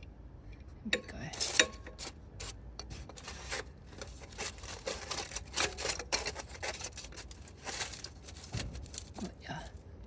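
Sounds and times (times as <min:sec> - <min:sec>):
wrench clicking and scraping on metal: 0:01.0 - 0:07.2.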